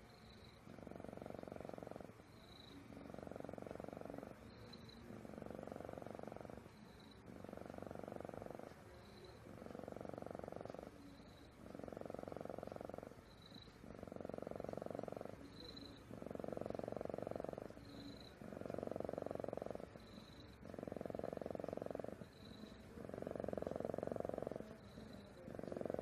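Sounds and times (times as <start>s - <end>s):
cat purring: 0.0s - 26.0s.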